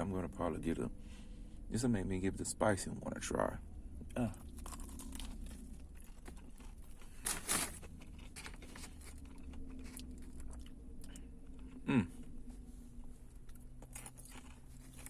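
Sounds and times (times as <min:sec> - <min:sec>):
steady low hum: 0:00.0 - 0:15.0
person chewing crunchy food: 0:04.1 - 0:12.4, 0:13.0 - 0:15.0.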